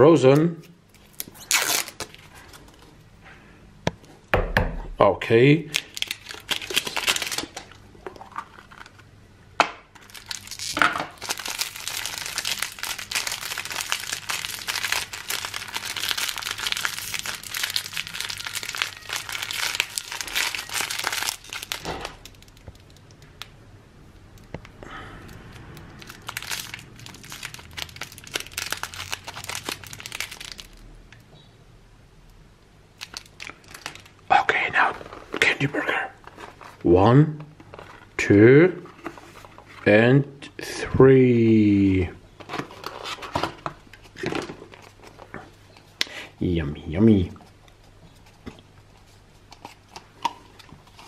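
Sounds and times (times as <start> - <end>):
wrapper crinkling and tearing: 0.9 - 2.7, 5.7 - 9.1, 9.9 - 23.5, 25.7 - 30.9, 33.0 - 35.5, 36.2 - 36.8.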